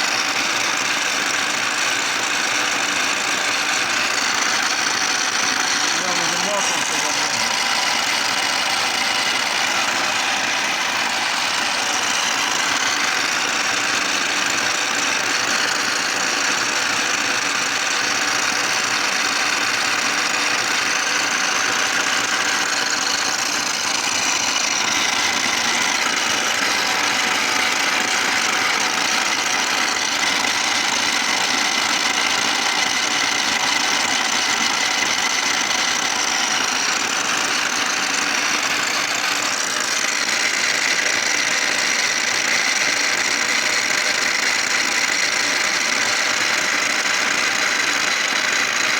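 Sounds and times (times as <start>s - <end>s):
gear whine: 0.0s - 48.9s
milling machine hum: 0.0s - 48.9s.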